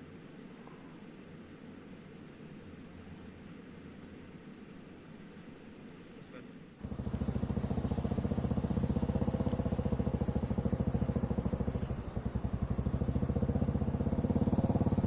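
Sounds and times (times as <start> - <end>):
small engine idling: 6.8 - 15.0.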